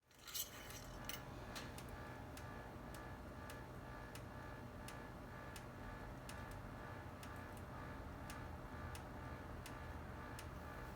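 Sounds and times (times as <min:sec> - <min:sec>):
light irregular engine ticks: 0:02.4 - 0:10.5.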